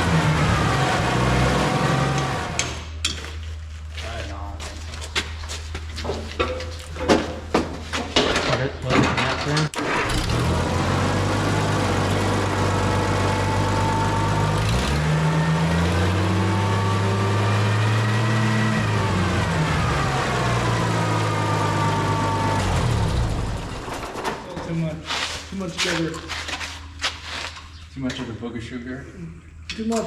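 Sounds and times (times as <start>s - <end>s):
tractor engine running: 0.0s - 3.0s, 9.7s - 24.3s.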